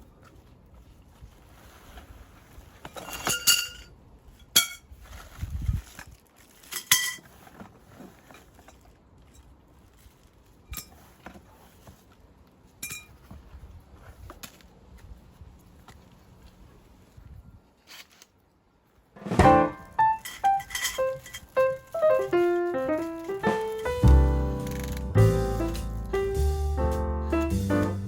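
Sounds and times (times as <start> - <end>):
dull low thud: 19.2 - 20.0, 24.0 - 28.0
hard objects clinking: 19.8 - 24.0.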